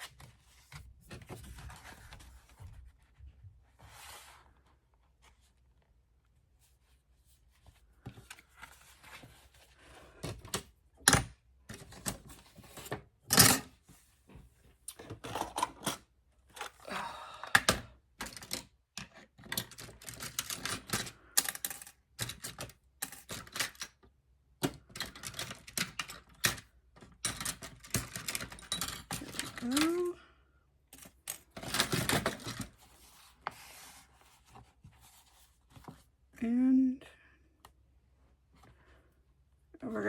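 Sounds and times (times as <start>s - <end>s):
paper rustling and sliding: 32.8s - 36.1s.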